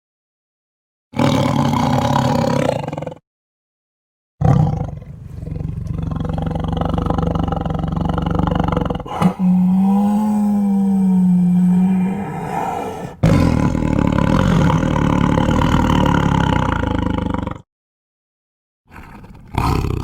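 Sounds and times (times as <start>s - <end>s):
tiger calling: 9.0s - 13.6s.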